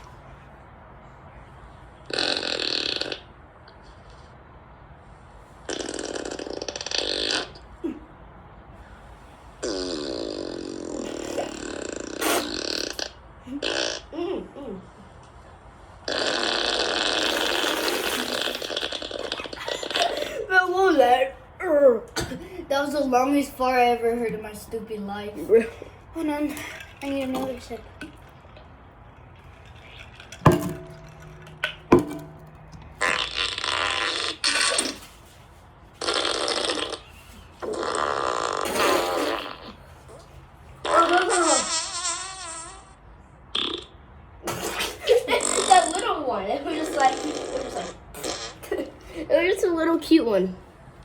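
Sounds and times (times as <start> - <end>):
fart sound effects: 2.1 - 3.4, 5.6 - 7.6, 9.6 - 14.1, 16.0 - 20.2, 30.3 - 35.3, 36.0 - 39.8, 40.8 - 46.0, 46.8 - 48.9
sharp knocks: 30.4 - 33.0.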